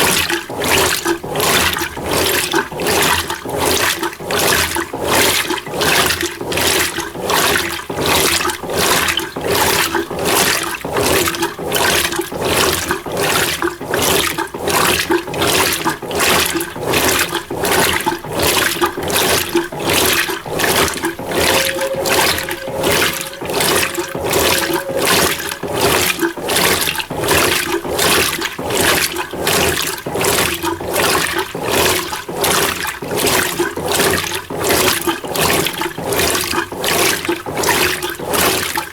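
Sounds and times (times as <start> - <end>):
washing machine water sloshing: 10.2 - 23.7.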